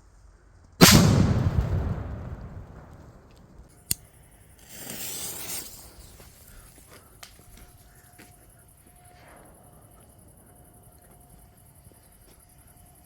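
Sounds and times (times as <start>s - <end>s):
firework bang: 0.8s - 3.7s
sharp crack: 0.8s - 4.0s.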